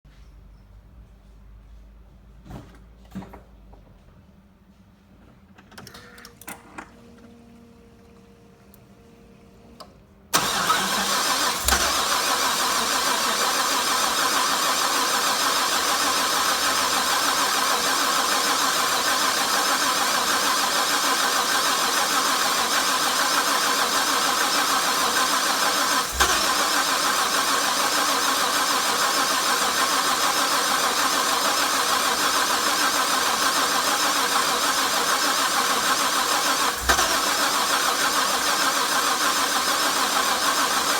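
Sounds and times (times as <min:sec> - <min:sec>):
engine cranking on starter: 0:10.3 - 0:40.9.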